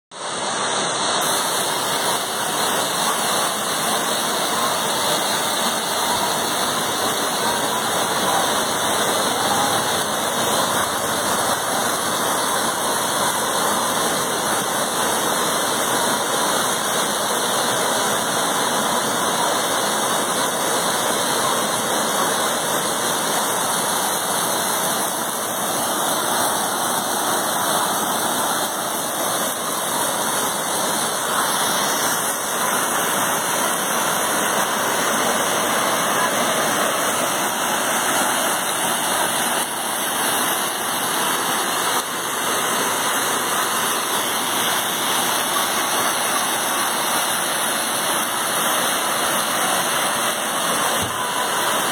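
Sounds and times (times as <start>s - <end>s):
rushing water: 0.1s - 51.9s.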